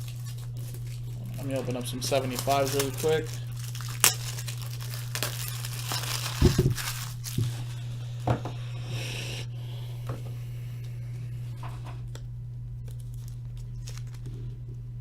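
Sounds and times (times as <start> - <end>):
wrapper tearing and crinkling: 0.0 - 7.7, 12.8 - 14.4
low electrical hum: 0.0 - 15.0.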